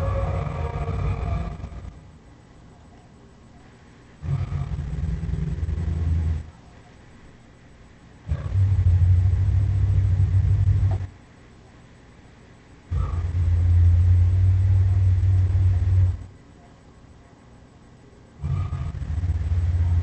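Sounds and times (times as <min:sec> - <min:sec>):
monster growls: 0:04.2 - 0:06.5, 0:12.9 - 0:16.2, 0:18.4 - 0:20.0.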